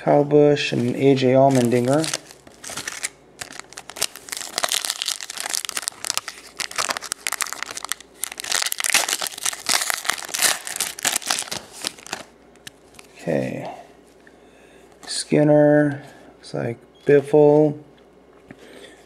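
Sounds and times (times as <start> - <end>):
foil wrapper tearing and crinkling: 1.5 - 12.3.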